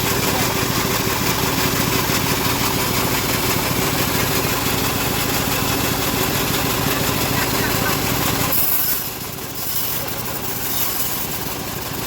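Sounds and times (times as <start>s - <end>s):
sawmill engine running: 0.0s - 12.0s.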